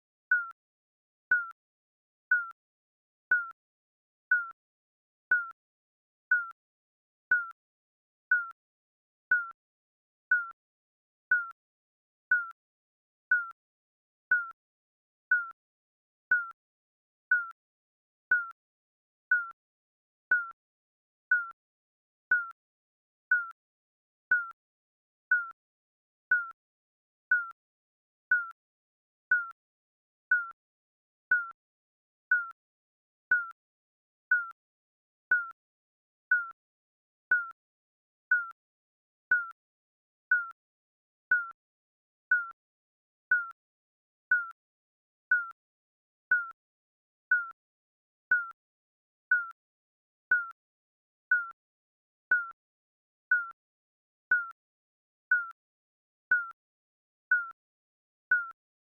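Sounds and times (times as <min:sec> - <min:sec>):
countdown timer beeps: 0:38.3 - 0:38.5.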